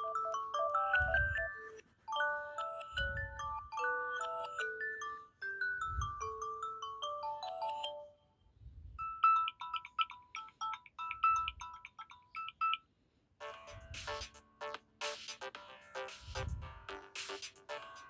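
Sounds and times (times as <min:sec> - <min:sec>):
ringtone of quick high notes: 0:00.0 - 0:04.7
chime-like ringtone melody: 0:00.0 - 0:08.3, 0:09.0 - 0:12.8.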